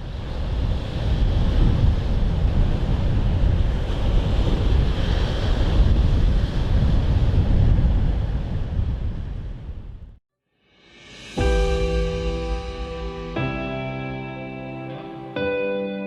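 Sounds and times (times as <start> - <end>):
rough sea waves: 0.0 - 10.0, 10.8 - 16.0
wind buffeting microphone: 0.0 - 10.2.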